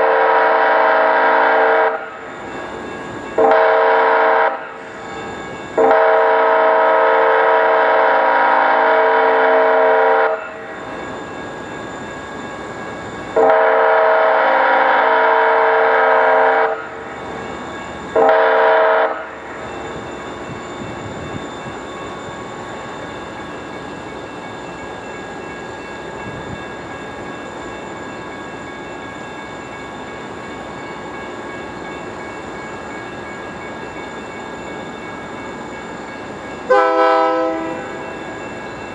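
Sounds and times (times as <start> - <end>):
train horn blasts: 0.0 - 2.2, 3.4 - 4.9, 5.8 - 10.7, 13.4 - 17.1, 18.2 - 19.4, 36.7 - 38.2
train running hum: 0.0 - 38.9.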